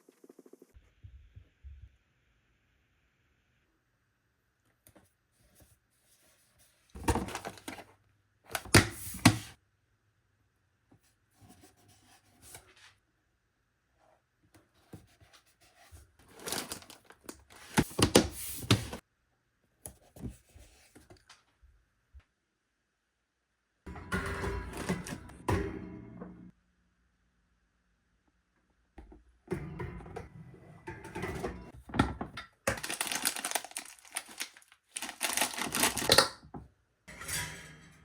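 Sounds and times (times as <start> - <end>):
items knocking and clattering: 7.0 - 7.8, 23.9 - 26.5, 30.9 - 37.8
packaging rustling: 16.2 - 17.9, 32.7 - 36.3.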